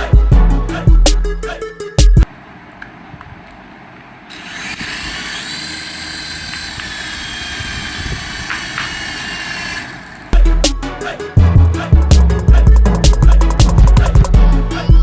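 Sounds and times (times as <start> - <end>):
music with heavy beat: 0.0 - 2.3, 10.4 - 15.0
small electric motor whine: 4.3 - 10.4.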